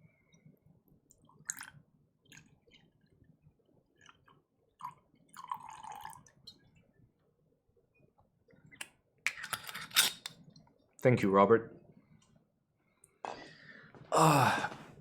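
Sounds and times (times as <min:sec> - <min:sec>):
liquid pouring into a glass: 0:01.2 - 0:02.7, 0:04.0 - 0:06.6.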